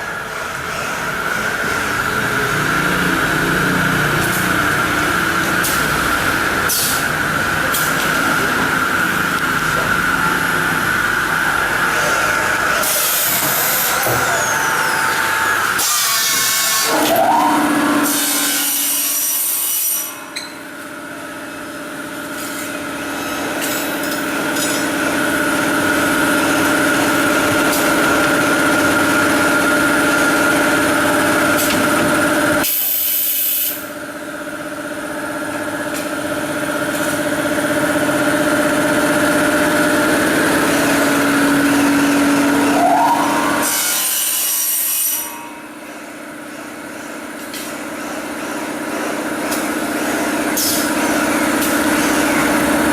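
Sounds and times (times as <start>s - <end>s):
machine cutters whining: 0.0s - 20.6s.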